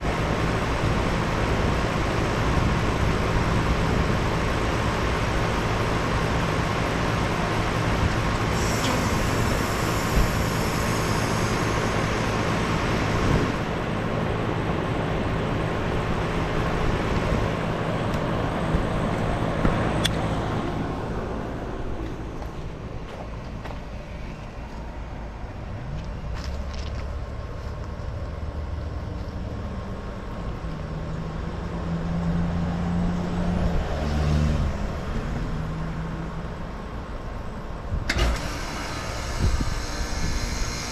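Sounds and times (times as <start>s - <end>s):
high hiss of refrigerant: 8.5s - 12.5s.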